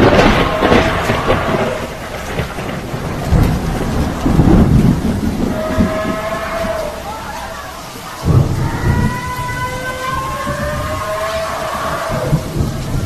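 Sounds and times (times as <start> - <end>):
heavy rain: 0.0 - 13.0
rumbling thunder: 0.0 - 13.0.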